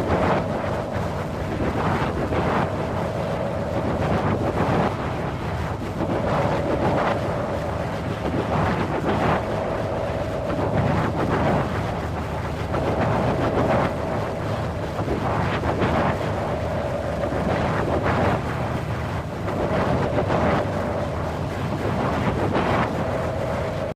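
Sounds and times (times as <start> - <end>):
strong wind gusting: 0.0 - 23.9.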